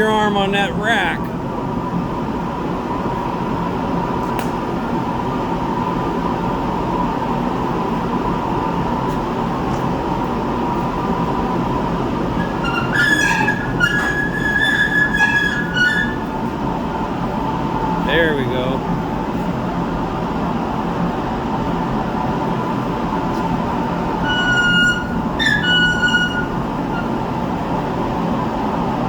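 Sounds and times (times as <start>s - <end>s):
high-pitched metal squeals: 12.3s - 16.3s, 24.1s - 27.3s.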